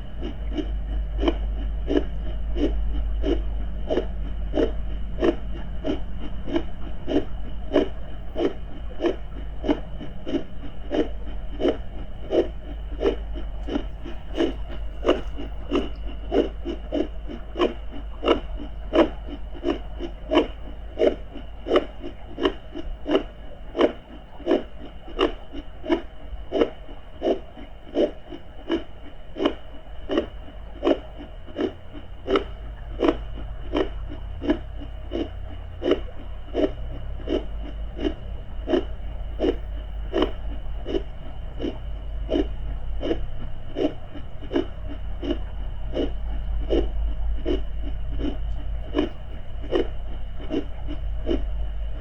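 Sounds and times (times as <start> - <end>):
heartbeat lub-dub rhythm: 0.0 - 24.7
low underwater rumble: 0.0 - 52.0.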